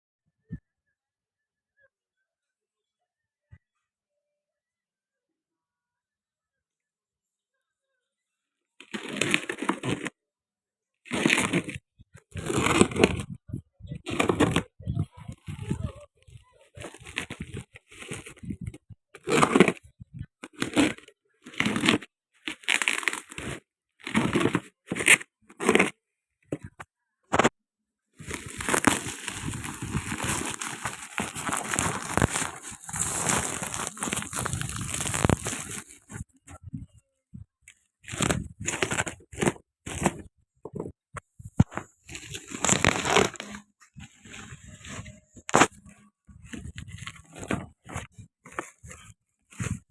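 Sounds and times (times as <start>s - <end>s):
packaging crinkling and tearing: 8.8s - 10.1s, 28.2s - 36.3s, 41.6s - 45.9s
packaging rustling: 28.2s - 36.2s.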